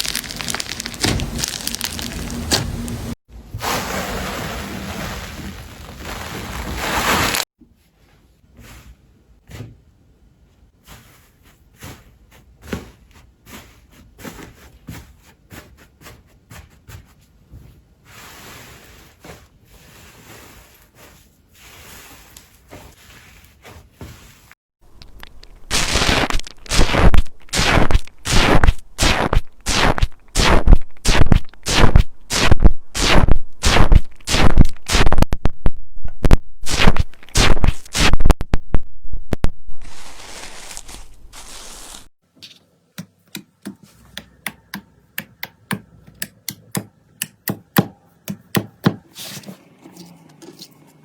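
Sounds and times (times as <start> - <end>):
slime crackling: 0.0 - 2.6, 24.9 - 35.2
slime squishing: 0.0 - 2.6.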